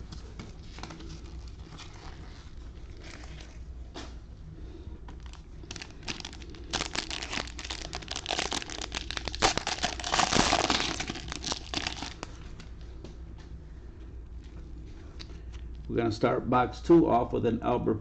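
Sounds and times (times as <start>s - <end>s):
packaging crinkling and tearing: 0.0s - 3.6s, 5.1s - 12.6s.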